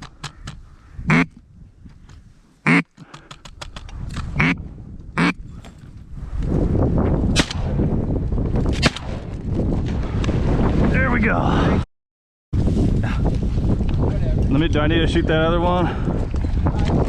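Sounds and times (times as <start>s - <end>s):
wind on microphone: 0.0s - 2.4s, 3.4s - 11.8s, 12.6s - 17.0s
mallard quacks: 0.3s - 1.3s, 2.6s - 2.9s, 4.4s - 4.6s, 5.2s - 5.4s.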